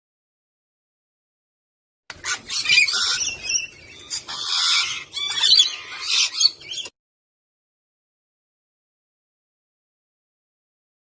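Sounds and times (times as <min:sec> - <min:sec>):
parrot squawking: 0:02.1 - 0:06.9.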